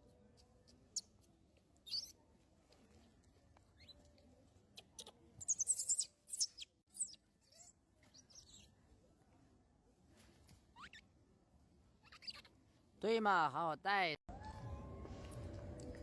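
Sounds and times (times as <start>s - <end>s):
baby monkey shrill squeals: 1.8s - 2.2s, 5.0s - 8.7s, 10.8s - 11.0s, 12.0s - 12.5s.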